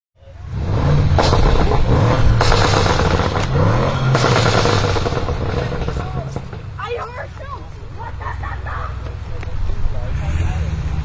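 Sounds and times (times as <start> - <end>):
car engine revving: 0.2 - 11.0
exhaust cracks: 0.3 - 11.0.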